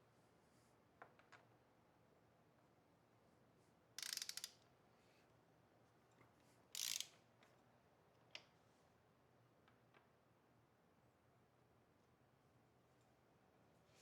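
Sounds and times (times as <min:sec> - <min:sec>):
hand ratchet clicking: 0:04.0 - 0:04.6, 0:06.8 - 0:07.2.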